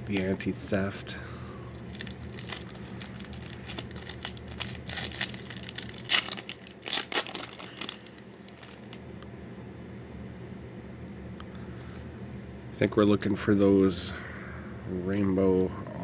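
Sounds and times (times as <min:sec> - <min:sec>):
plastic packaging crinkling: 0:01.7 - 0:09.0.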